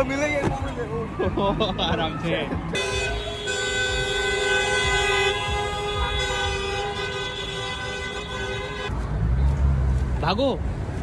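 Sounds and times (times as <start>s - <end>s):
vehicle horn blast: 2.8s - 9.0s.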